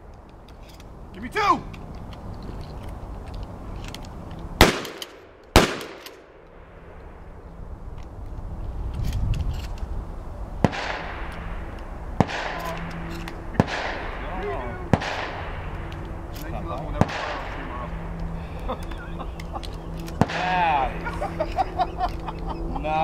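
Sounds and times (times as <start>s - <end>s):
shotgun shots with echo: 4.6s - 6.2s, 10.6s - 11.3s, 12.2s - 12.9s, 13.5s - 15.7s, 17.0s - 17.8s, 20.2s - 20.9s.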